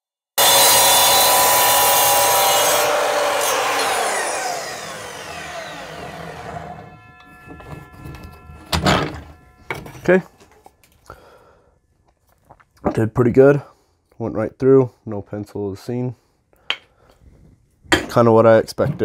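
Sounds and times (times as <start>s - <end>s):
saw motor winding down: 0.4s - 9.9s
miter saw cutting wood: 0.4s - 10.2s.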